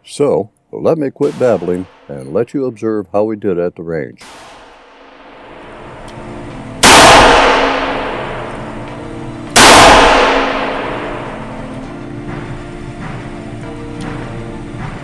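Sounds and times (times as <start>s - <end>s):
revolver gunshots: 1.2s - 2.3s, 4.2s - 12.1s.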